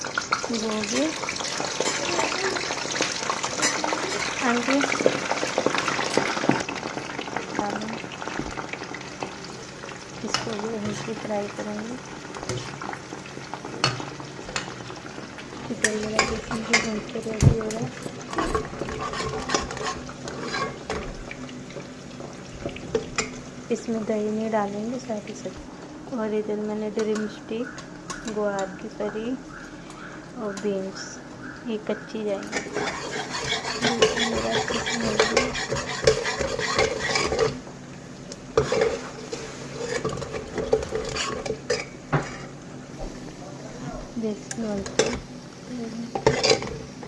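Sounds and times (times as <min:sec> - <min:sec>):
food frying: 0:00.0 - 0:47.0
ladle scraping in a pan: 0:18.3 - 0:21.1, 0:32.5 - 0:37.6, 0:38.6 - 0:42.6.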